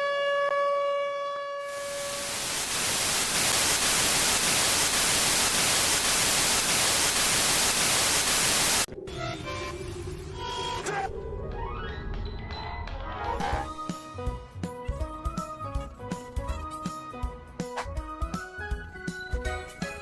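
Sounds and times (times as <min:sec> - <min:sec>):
electronic static hiss: 0:01.7 - 0:08.9.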